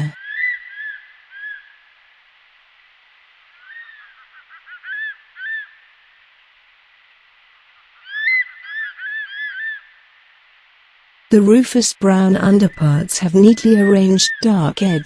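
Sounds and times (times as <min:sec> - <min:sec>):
faint steady hiss: 0:00.0 - 0:15.0
eagle calling: 0:03.6 - 0:05.8, 0:08.0 - 0:09.8, 0:12.4 - 0:15.0.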